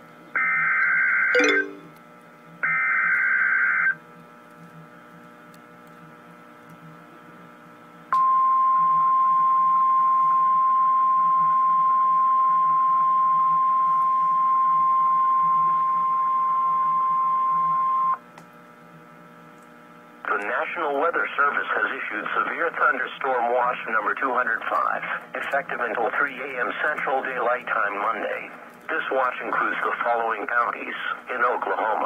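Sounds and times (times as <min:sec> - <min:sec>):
radio hiss: 0:20.2 - 0:32.0.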